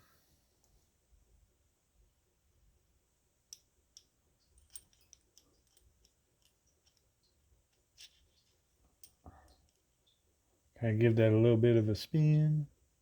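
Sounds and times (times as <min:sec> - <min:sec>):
faint clicks of small parts: 0:03.5 - 0:10.4.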